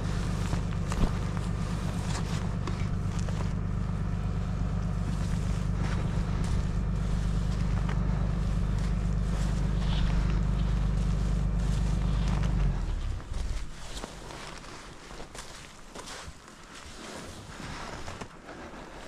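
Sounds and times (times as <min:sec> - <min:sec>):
snowblower engine running: 0:00.0 - 0:14.9.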